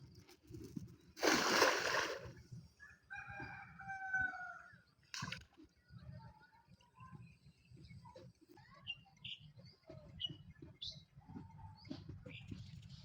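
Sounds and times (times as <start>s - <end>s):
rooster crowing: 3.1s - 4.7s.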